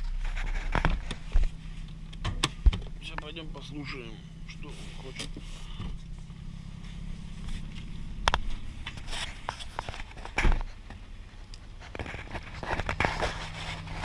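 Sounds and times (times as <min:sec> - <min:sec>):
irregular clicks and thumps: 0:00.0 - 0:03.4, 0:07.7 - 0:14.0
car engine idling: 0:00.0 - 0:14.0.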